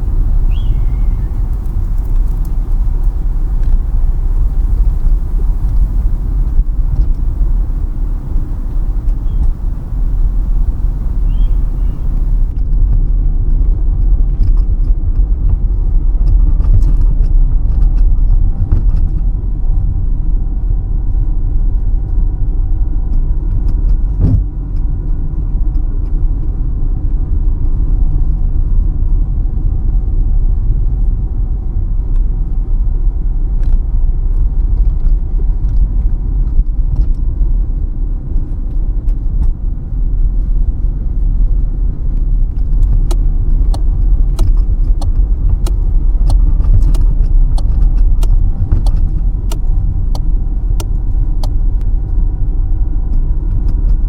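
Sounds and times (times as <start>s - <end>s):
faint hiss: 0.0s - 12.5s
faint ticks: 0.0s - 12.5s
car engine and tyre rumble: 0.0s - 12.6s, 14.0s - 54.0s.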